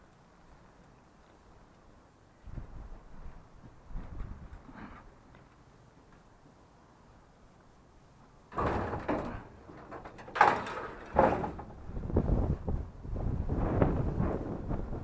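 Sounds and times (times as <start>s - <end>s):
door sliding open: 8.5s - 11.9s.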